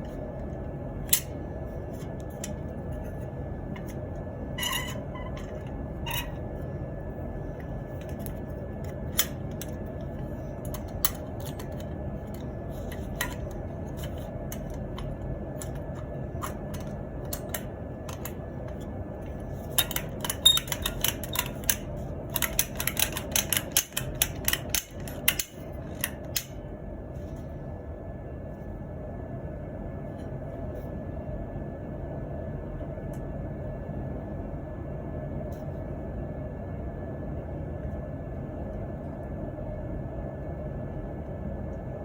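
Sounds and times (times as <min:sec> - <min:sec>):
steady low hum: 0:00.0 - 0:42.0
small parts clicking and tapping: 0:08.0 - 0:26.6.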